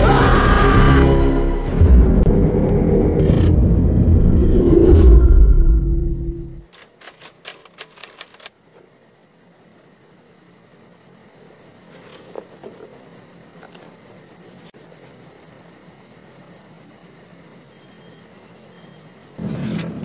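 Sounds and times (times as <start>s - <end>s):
crickets chirping: 3.7s - 20.0s
sharp clicks: 6.7s - 8.6s.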